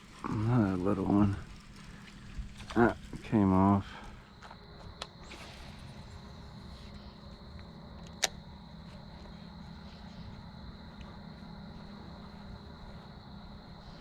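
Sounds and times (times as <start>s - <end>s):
constant high-pitched tone: 0.0s - 14.0s
low rumble: 5.2s - 14.0s.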